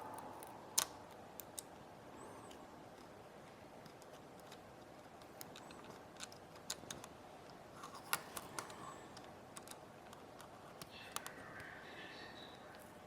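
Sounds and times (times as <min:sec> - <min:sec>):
faint hiss: 0:10.5 - 0:13.0.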